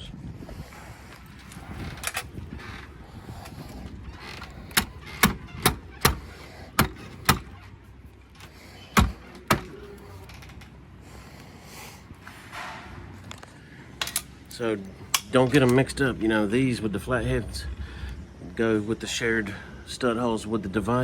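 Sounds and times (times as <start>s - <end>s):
metallic clicks of door hardware: 4.3s - 7.7s, 14.0s - 15.8s.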